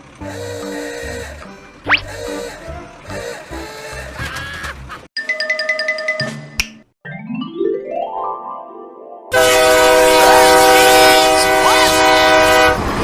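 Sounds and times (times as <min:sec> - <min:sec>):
multi-note train horn: 0:00.2 - 0:04.2, 0:09.3 - 0:13.0.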